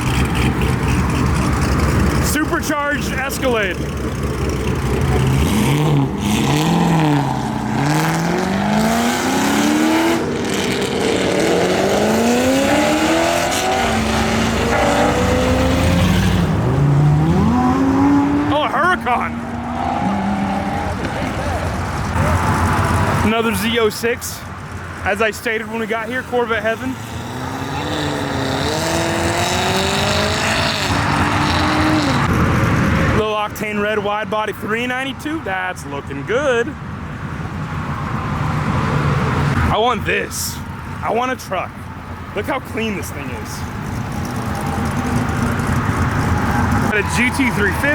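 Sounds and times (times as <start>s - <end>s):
car engine accelerating hard: 0.0s - 23.4s, 26.6s - 33.2s, 43.6s - 47.9s.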